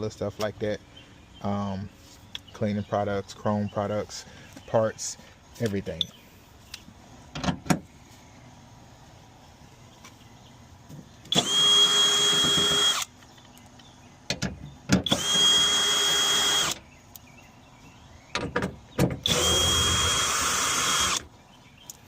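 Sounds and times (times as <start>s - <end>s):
power drill running: 11.3s - 13.1s, 15.1s - 16.8s, 19.2s - 21.2s.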